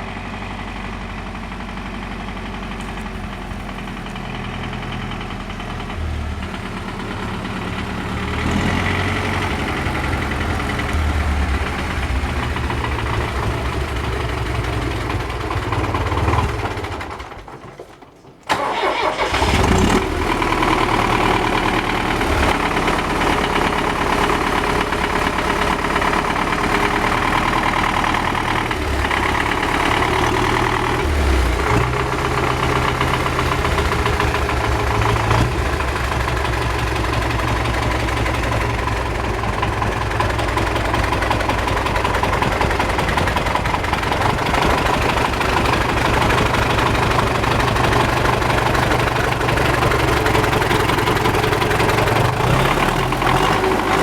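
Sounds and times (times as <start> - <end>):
diesel tractor engine running: 0.0 - 54.0.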